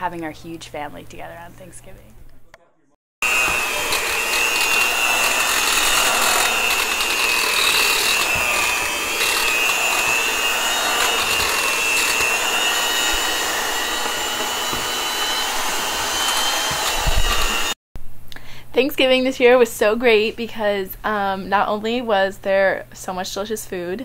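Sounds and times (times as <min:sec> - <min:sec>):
small electric motor whining: 0:03.2 - 0:17.8.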